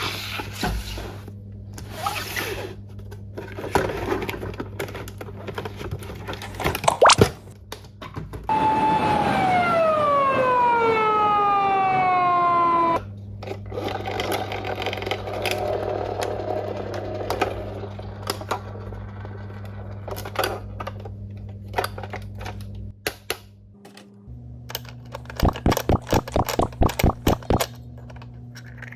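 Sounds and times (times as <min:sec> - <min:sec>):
toy siren falling wail: 0:08.5 - 0:13.0, 0:25.4 - 0:27.6
clicks and handling noise: 0:24.7 - 0:28.9.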